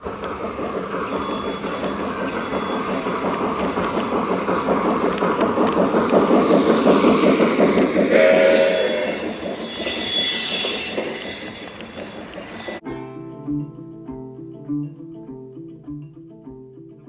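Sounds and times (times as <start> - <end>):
model train steam chuffing: 0.0 - 12.8.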